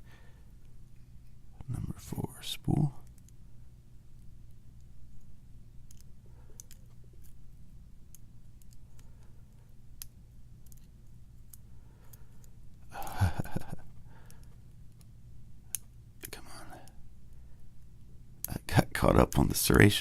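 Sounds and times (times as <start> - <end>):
faint small metal clicks: 3.0 - 3.4, 4.2 - 7.4, 8.1 - 12.6, 14.2 - 17.0.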